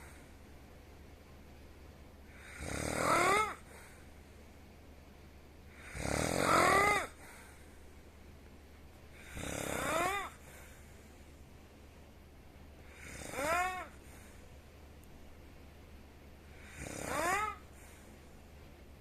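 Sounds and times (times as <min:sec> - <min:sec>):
person snoring with whistle: 0:02.3 - 0:03.7, 0:05.8 - 0:07.2, 0:09.2 - 0:10.4, 0:12.9 - 0:14.0, 0:16.6 - 0:17.7.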